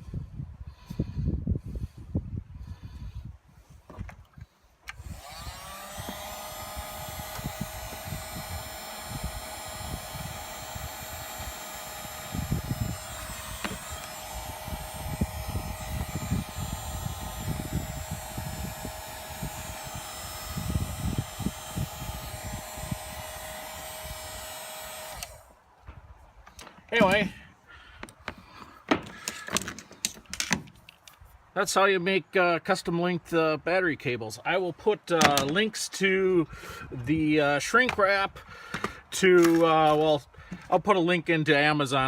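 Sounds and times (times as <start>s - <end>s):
heat gun fan whining: 4.8s - 30.6s, 35.1s - 35.7s.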